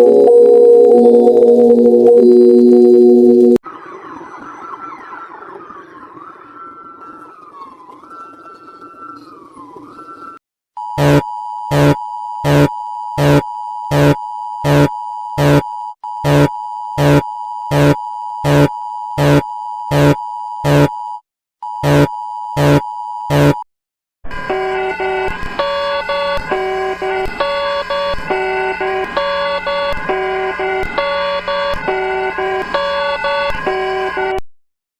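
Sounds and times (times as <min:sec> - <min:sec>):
two-tone alert signal: 0:00.0 - 0:03.6, 0:10.8 - 0:21.0, 0:21.6 - 0:23.6, 0:24.4 - 0:34.4
wavering siren-like tone: 0:00.0 - 0:10.4, 0:24.3 - 0:34.4
loud pulsing beeps: 0:10.8 - 0:21.0, 0:21.6 - 0:23.6, 0:24.5 - 0:34.4.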